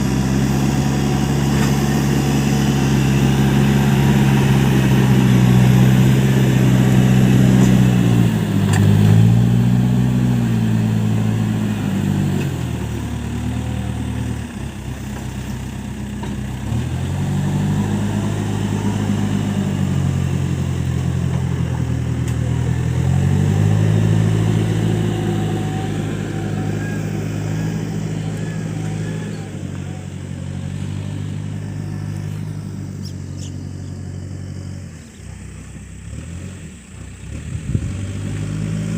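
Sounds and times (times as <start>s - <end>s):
backhoe diesel engine running: 0.0s - 38.9s.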